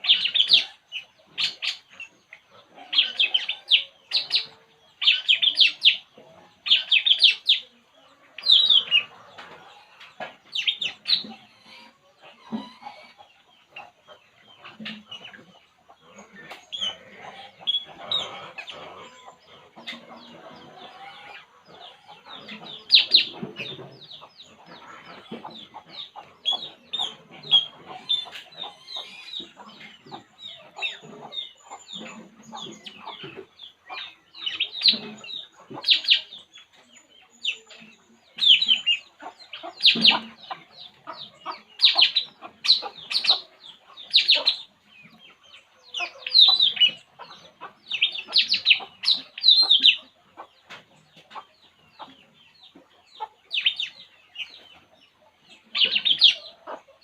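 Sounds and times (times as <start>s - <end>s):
bird chirping rapidly: 38.4s - 44.7s.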